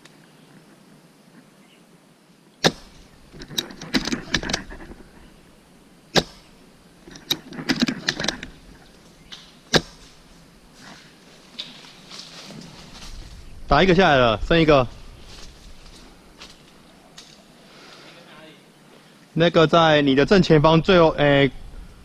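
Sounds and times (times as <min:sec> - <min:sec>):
airsoft rifle shots: 0:02.6 - 0:05.2, 0:06.1 - 0:06.7, 0:07.3 - 0:10.3
clicks and rattles: 0:02.7 - 0:05.3, 0:06.1 - 0:10.2.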